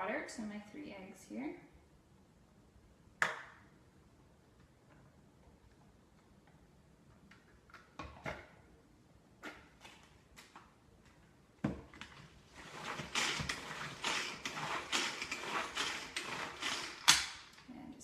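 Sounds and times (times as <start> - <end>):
pull-cord chopper whirring: 12.6 - 17.6.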